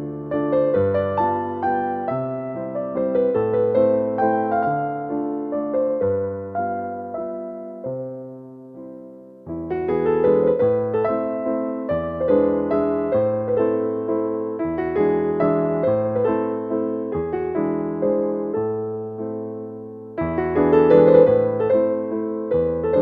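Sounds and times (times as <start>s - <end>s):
slow piano music: 0.0s - 23.0s.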